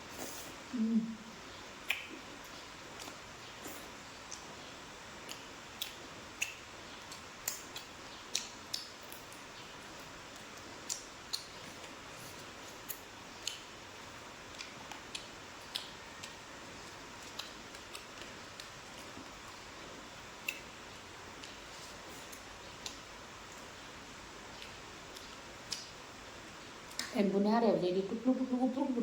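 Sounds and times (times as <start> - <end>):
faint steady hiss: 0.0 - 29.0
person chewing with lip smacks: 1.8 - 4.5, 5.2 - 9.5, 10.3 - 12.0, 12.7 - 13.7, 14.5 - 19.6, 24.5 - 26.0.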